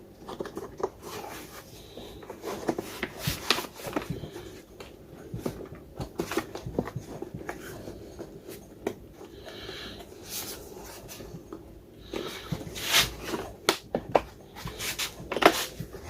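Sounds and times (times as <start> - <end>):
plastic scrape: 12.1 - 13.6, 14.6 - 16.0.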